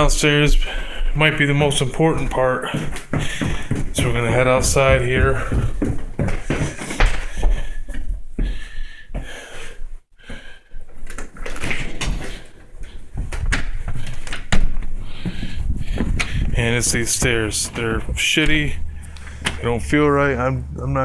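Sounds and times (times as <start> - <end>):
footsteps: 0.0 - 20.1
door opening and shutting: 11.0 - 19.7.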